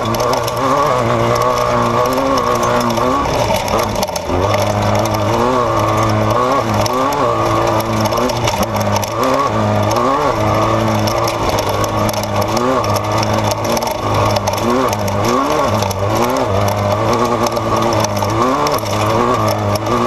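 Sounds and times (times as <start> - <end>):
race car engine revving: 0.0 - 20.0.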